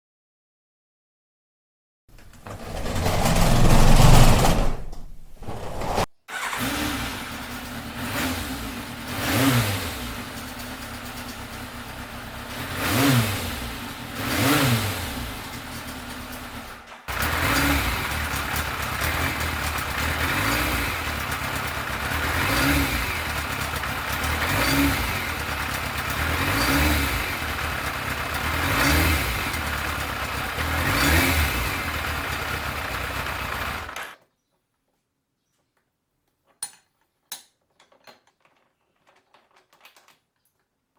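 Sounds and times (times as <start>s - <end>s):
motorcycle engine idling and revving: 6.3s - 34.2s.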